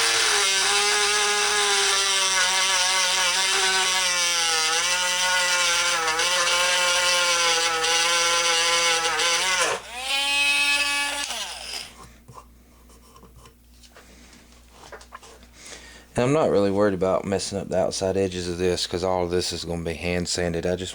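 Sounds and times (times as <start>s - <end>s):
rotary tool grinding wood: 0.0s - 12.0s.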